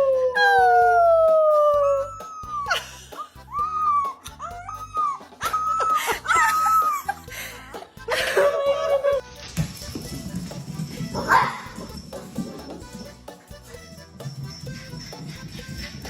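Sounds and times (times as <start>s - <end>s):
dog howling: 0.0s - 2.7s.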